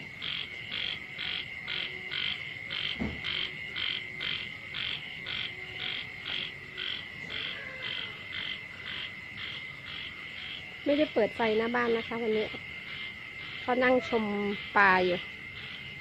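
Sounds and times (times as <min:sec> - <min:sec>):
frog calling: 0:00.0 - 0:16.0
frog chorus: 0:00.0 - 0:16.0
knock: 0:03.0 - 0:03.3.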